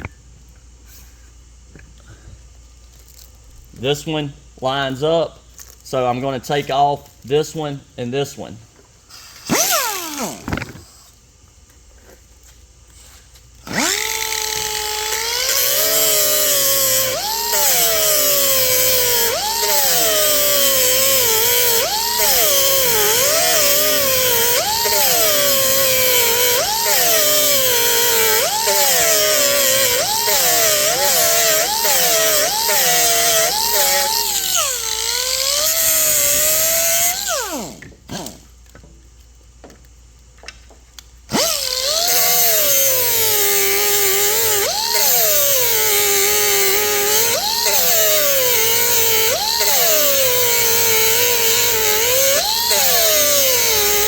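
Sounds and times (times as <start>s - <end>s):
air grinder grinding metal: 13.7s - 38.4s, 41.3s - 54.0s.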